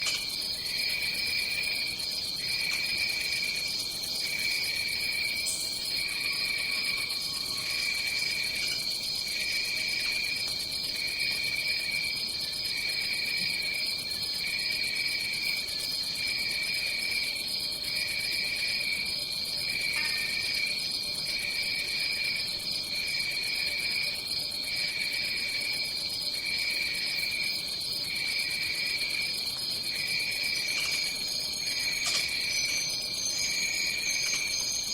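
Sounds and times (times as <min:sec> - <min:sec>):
lower cricket chirping: 0:00.0 - 0:34.9.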